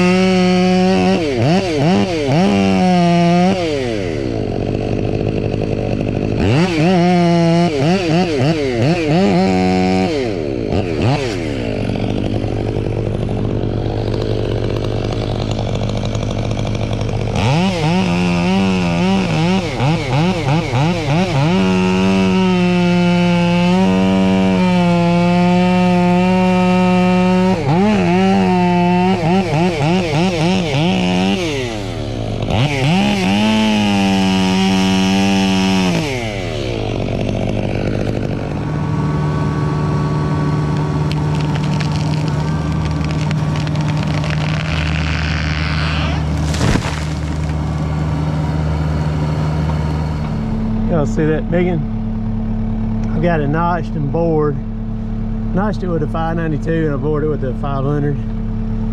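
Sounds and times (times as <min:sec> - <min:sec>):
chainsaw revving and cutting: 0:00.0 - 0:58.9.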